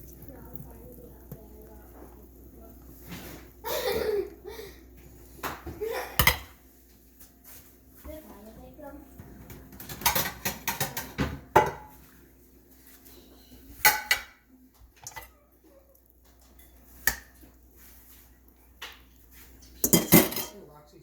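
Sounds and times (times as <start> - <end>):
cutlery and dishes clinking: 9.6 - 12.0, 13.8 - 14.4, 15.0 - 15.4, 19.7 - 20.6.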